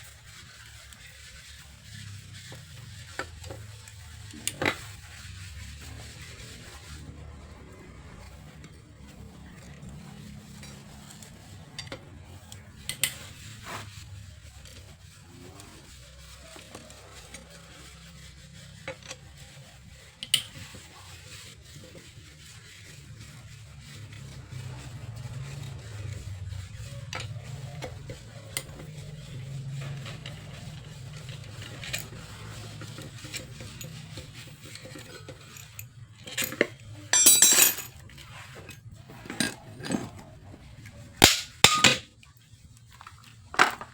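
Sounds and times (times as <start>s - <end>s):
tools clinking: 35.5s - 38.0s, 41.2s - 42.1s.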